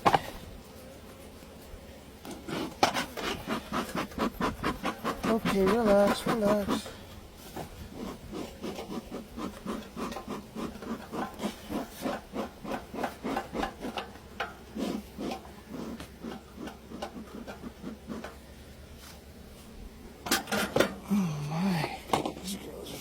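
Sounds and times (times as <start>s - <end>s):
metal tool scraping wood: 2.3s - 18.4s.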